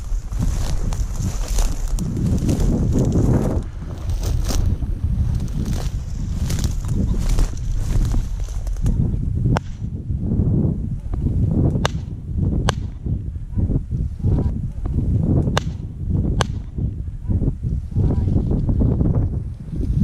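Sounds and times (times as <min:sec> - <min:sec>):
footsteps crunching through dry vegetation: 0:00.0 - 0:09.1
wind buffeting microphone: 0:00.0 - 0:20.0
sharp snaps: 0:08.7 - 0:09.9, 0:11.0 - 0:13.1, 0:15.4 - 0:16.8.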